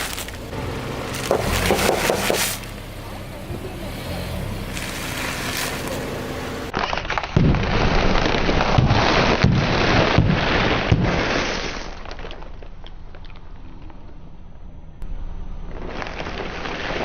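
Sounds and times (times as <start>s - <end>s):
objects crunching under car tyre: 0.0s - 3.0s, 4.0s - 13.7s.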